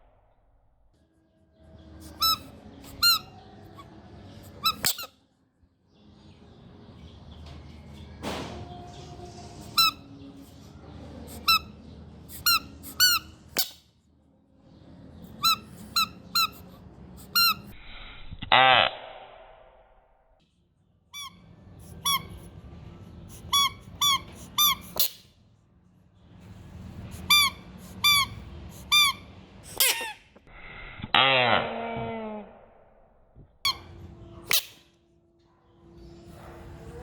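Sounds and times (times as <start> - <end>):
short high-pitched squeaks: 4.5 - 5.1, 23.3 - 25.3.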